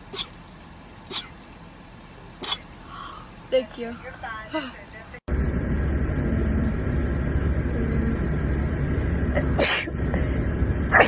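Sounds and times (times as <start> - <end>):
steady low rumble: 0.0 - 11.0
person sneezing: 0.1 - 0.4, 1.1 - 1.3, 2.4 - 2.7, 9.4 - 9.9.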